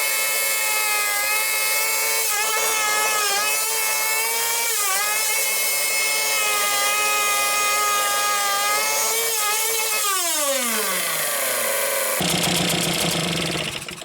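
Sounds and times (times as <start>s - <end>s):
outboard motor running: 12.2s - 14.0s.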